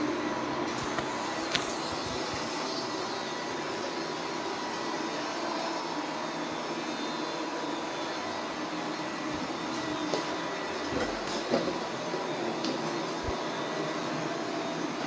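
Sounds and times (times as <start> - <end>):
robot vacuum cleaner whirring: 0.0 - 15.0.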